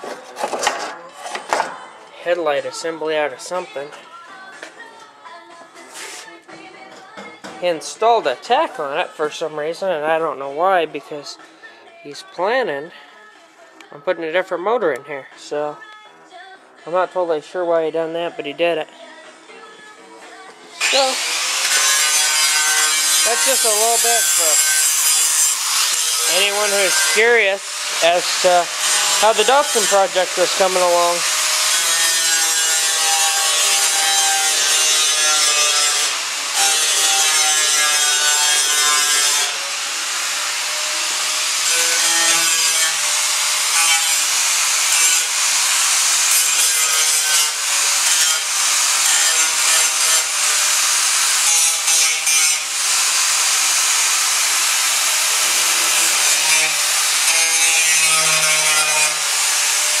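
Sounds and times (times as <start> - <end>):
electric grinder on sheet metal: 20.8 - 60.0.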